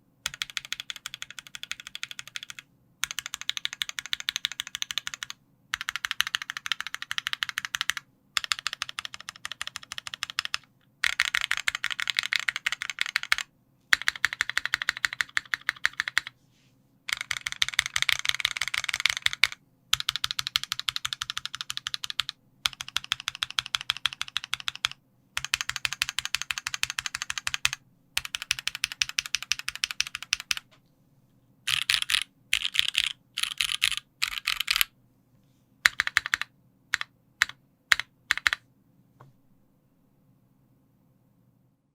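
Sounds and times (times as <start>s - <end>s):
mechanical keyboard typing: 0.2s - 16.3s, 17.1s - 30.7s, 31.7s - 34.9s, 35.8s - 38.6s.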